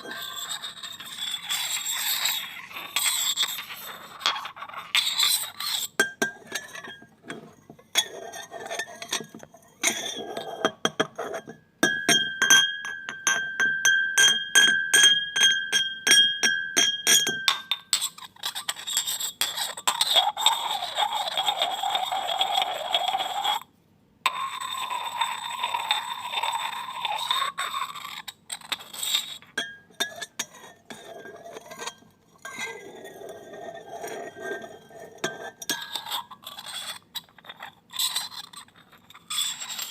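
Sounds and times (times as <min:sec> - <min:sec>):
glass grating against glass: 0:00.0 - 0:11.6, 0:17.1 - 0:23.6, 0:24.3 - 0:39.9
glass clinking: 0:06.0 - 0:18.0, 0:29.6 - 0:35.9
ringing glass tone: 0:11.8 - 0:17.7.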